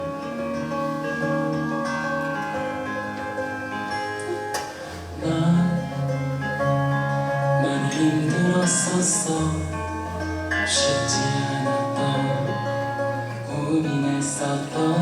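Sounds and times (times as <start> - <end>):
guitar chords: 0.0 - 15.0.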